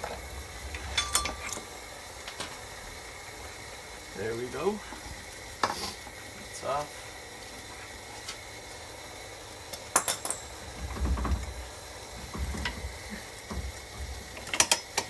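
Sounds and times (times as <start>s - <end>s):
metal hand tools clinking: 0.8s - 1.7s.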